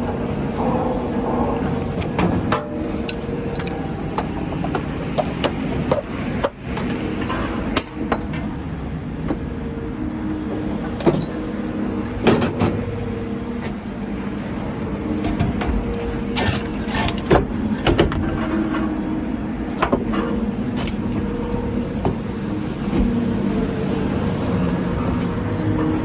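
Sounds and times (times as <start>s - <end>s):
scrap metal clanking: 15.2s - 19.1s.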